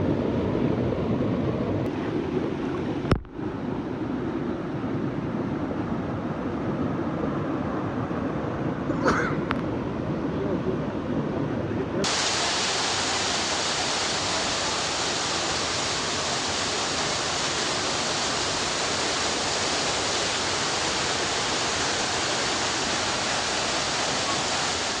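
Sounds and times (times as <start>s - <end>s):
waterfall roaring: 12.0s - 25.0s.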